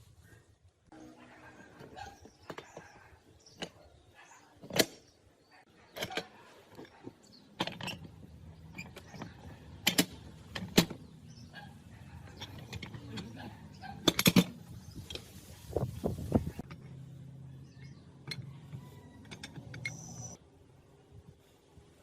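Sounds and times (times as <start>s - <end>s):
metal floor jack clicks and knocks: 8.8s - 11.0s, 14.0s - 14.6s.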